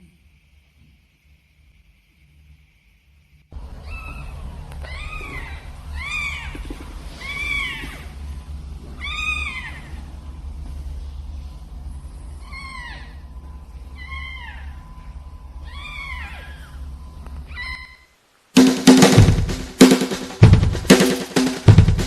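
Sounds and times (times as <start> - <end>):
steady low hum: 0.0 - 17.9, 18.6 - 22.0
cat meowing: 3.7 - 8.2, 8.9 - 10.1, 12.4 - 13.3, 13.9 - 15.0, 15.6 - 18.2.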